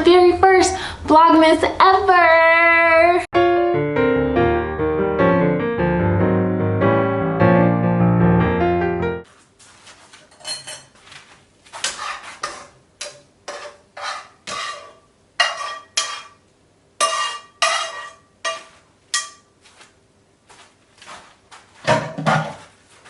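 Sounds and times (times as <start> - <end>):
dishes and cutlery clinking: 10.2 - 11.0, 11.8 - 16.4, 17.0 - 19.5.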